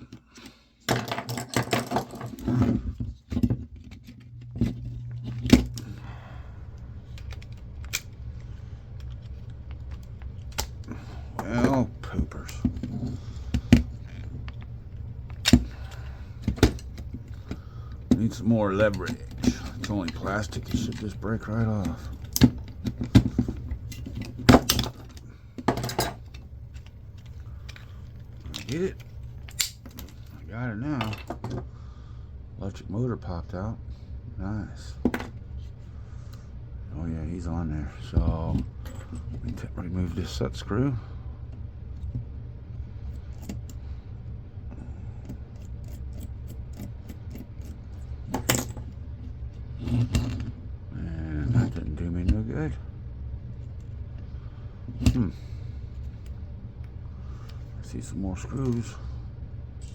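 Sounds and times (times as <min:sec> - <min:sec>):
plastic parts clattering: 0:00.8 - 0:06.0, 0:15.3 - 0:30.3
low hum: 0:01.2 - 0:59.9.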